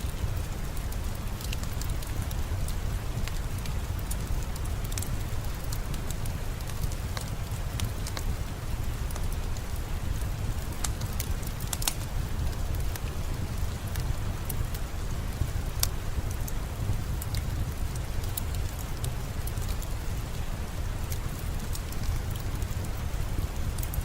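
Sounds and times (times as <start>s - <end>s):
crackling wood fire: 0.0s - 24.0s
steady rain: 0.0s - 24.0s.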